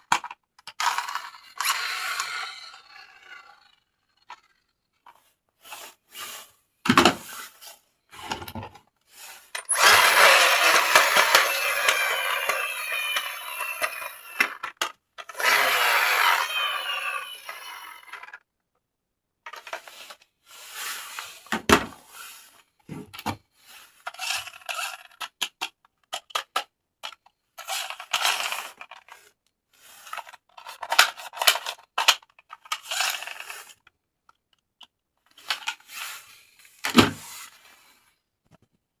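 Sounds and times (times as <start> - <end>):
small plastic clicks: 24.1 - 29.2
plastic scrapes: 35.2 - 38.7.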